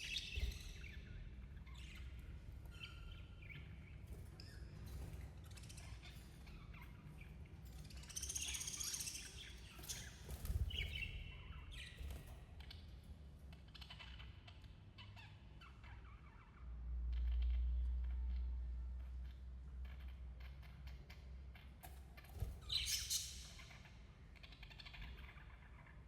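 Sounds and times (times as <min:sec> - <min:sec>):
budgerigars chirping: 0:00.0 - 0:12.9, 0:22.2 - 0:26.0.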